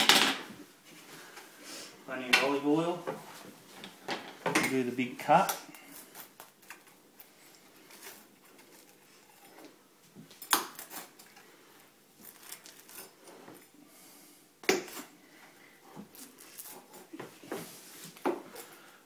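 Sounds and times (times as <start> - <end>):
pizza crust crunching: 10.7 - 13.5.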